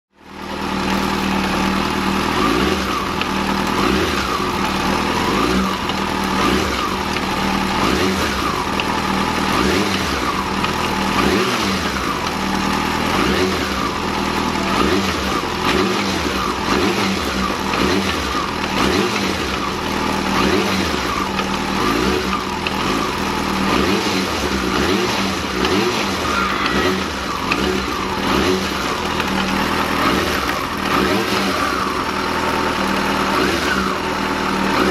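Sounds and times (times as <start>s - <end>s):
motorcycle engine revving: 0.1s - 34.9s.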